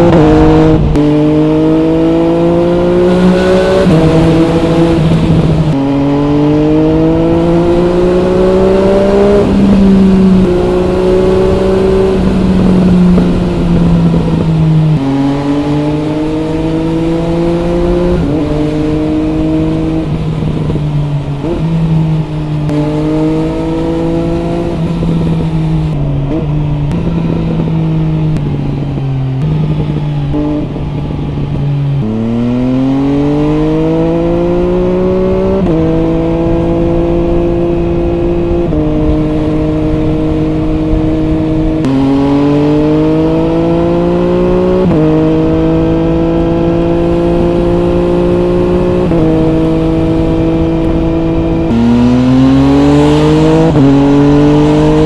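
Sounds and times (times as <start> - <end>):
motorcycle engine revving: 0.0 - 55.0.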